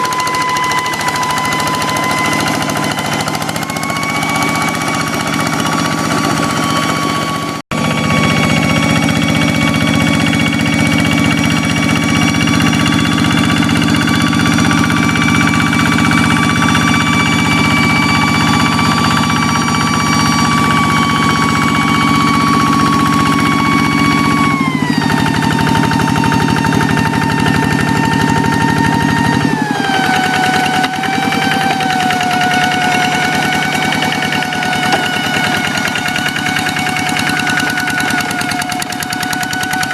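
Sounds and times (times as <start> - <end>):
high whine: 0.0 - 39.1
diesel engine chugging: 0.0 - 39.9.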